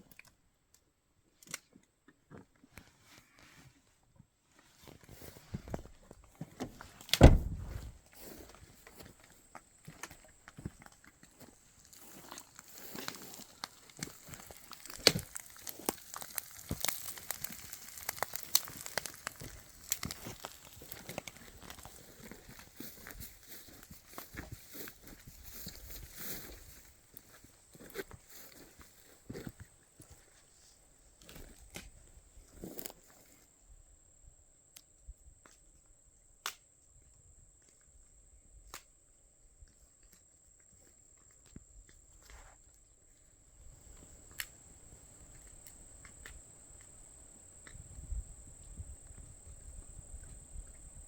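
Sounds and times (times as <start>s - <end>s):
campfire crackling and popping: 9.9s - 27.3s, 43.8s - 51.0s.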